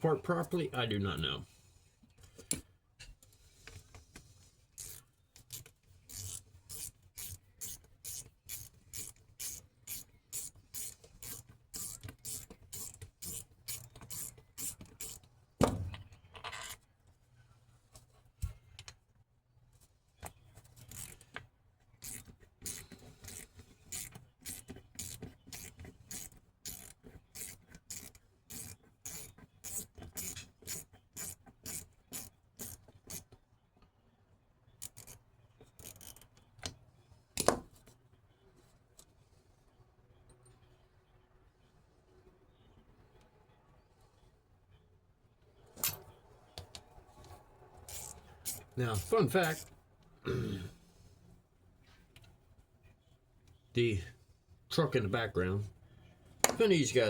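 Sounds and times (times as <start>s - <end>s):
socket ratchet clicking: 4.8s - 15.3s, 22.0s - 33.2s, 34.8s - 36.3s, 47.9s - 48.7s.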